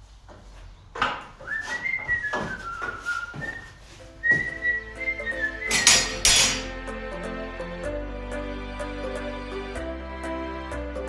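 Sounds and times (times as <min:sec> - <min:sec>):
person whistling a tune: 0:01.4 - 0:06.0
background music: 0:04.1 - 0:11.0
sharp knocks: 0:05.7 - 0:06.8.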